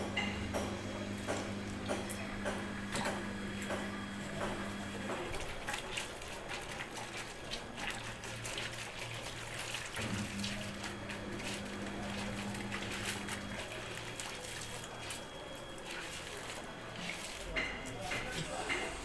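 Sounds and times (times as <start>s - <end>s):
washing machine low hum: 0.0s - 19.0s
water trickling and splashing: 1.1s - 19.0s.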